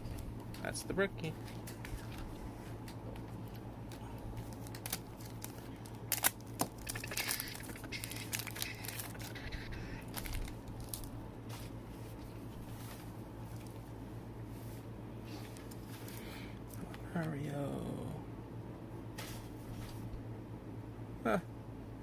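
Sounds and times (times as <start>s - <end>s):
steady low hum: 0.0s - 22.0s
cards clicking and rustling: 1.4s - 12.3s
plastic wrapper crinkling and tearing: 3.3s - 11.2s.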